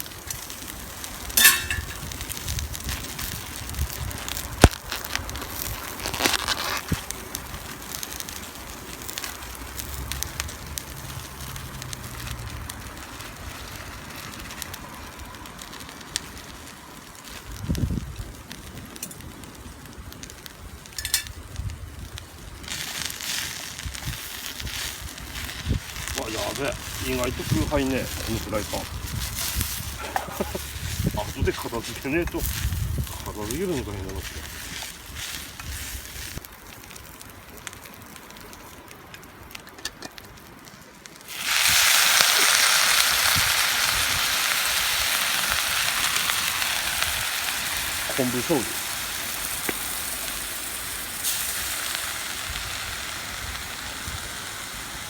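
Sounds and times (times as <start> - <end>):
food sizzling in a hot pan: 0.0 - 16.6, 20.9 - 21.6, 22.6 - 36.4, 41.2 - 55.0
campfire crackling and popping: 0.0 - 55.0
high hiss: 41.2 - 55.0.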